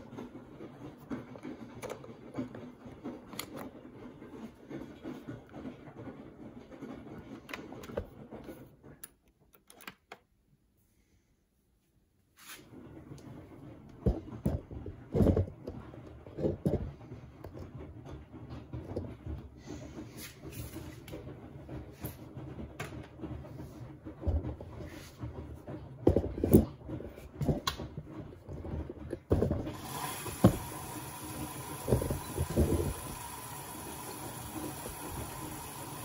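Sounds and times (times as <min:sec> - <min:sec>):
washing machine clunks and knocks: 0:28.8 - 0:36.0
water rushing into washing machine: 0:29.2 - 0:36.0.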